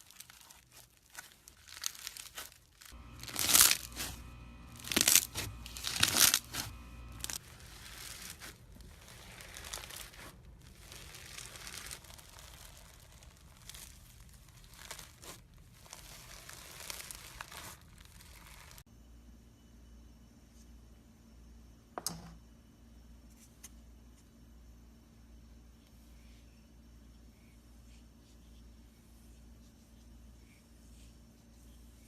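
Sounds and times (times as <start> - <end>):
slime crackling: 0.0 - 18.8.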